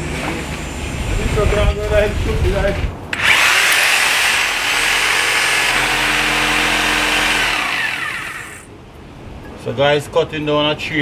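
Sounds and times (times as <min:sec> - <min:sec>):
power saw cutting wood: 0:03.1 - 0:08.7.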